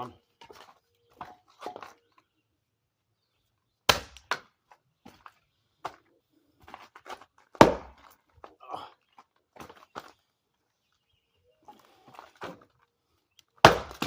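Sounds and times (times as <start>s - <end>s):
blade chopping into wood: 3.9s - 4.5s, 7.6s - 8.2s, 13.6s - 14.0s.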